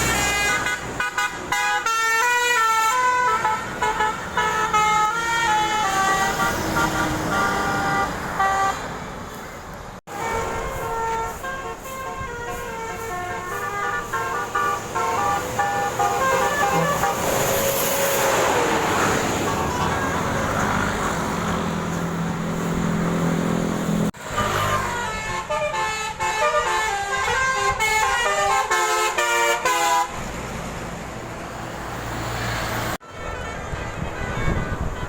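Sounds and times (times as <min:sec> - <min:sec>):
bus horn tune: 0:00.0 - 0:09.0, 0:10.1 - 0:18.6, 0:24.2 - 0:30.3, 0:33.0 - 0:35.0
steady horn tones: 0:00.0 - 0:09.0, 0:10.1 - 0:20.6, 0:24.1 - 0:30.3, 0:33.0 - 0:35.0
bus engine and road noise: 0:00.0 - 0:35.0.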